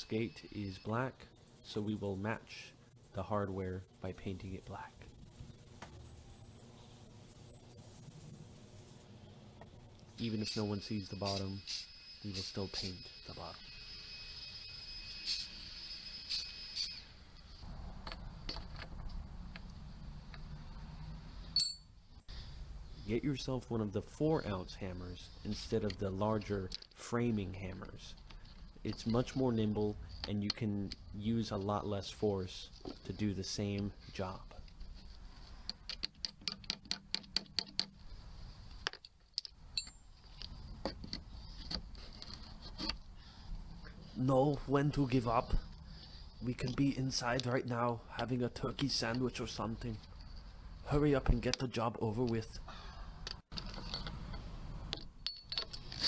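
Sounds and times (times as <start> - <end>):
spray-paint can hissing: 11.7 - 12.5, 15.1 - 16.9
light clicks and handling knocks: 34.5 - 38.1.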